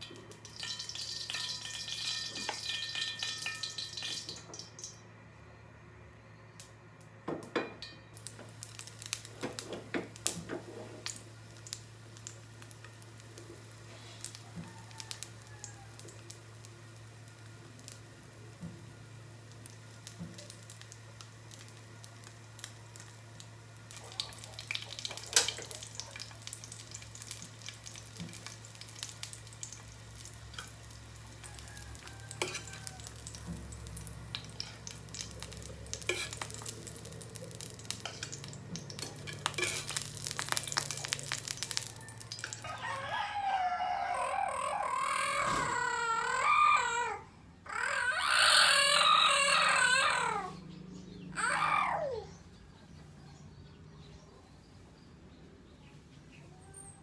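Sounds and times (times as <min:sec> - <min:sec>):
food frying with crackles: 0:00.0 - 0:05.1, 0:08.1 - 0:46.5
rooster crowing: 0:14.3 - 0:16.3, 0:31.2 - 0:33.8, 0:41.6 - 0:50.6.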